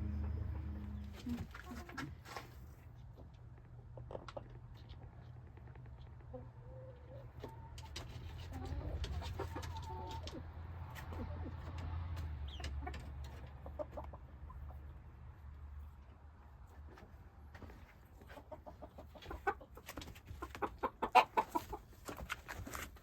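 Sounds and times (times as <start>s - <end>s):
low rumble: 0.0s - 1.4s
hen clucking: 0.0s - 2.2s, 3.0s - 15.0s, 18.2s - 22.2s
clicks and rustles: 21.6s - 23.0s.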